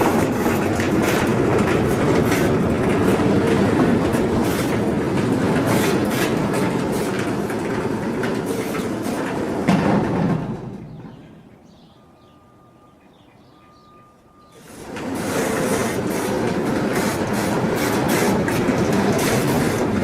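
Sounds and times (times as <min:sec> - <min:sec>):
metal sliding door rolling: 0:00.0 - 0:11.4, 0:14.4 - 0:20.0.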